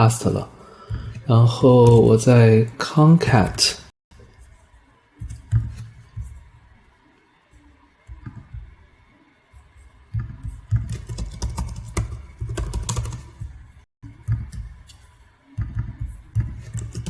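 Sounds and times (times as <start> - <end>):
typing on computer keyboard: 10.8 - 13.4, 16.6 - 17.0.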